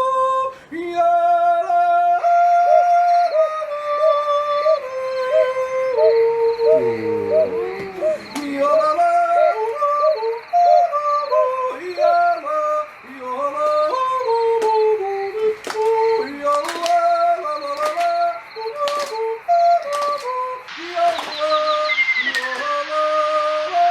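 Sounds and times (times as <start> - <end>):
yodeling: 0.0 - 23.9
high bird chirps: 12.8 - 23.9
sharp clicks: 13.0 - 23.3.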